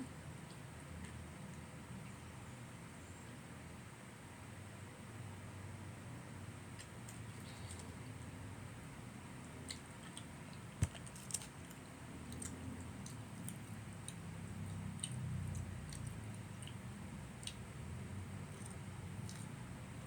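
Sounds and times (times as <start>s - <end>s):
eating sounds: 6.7s - 20.0s
small clicks and taps: 10.8s - 11.5s.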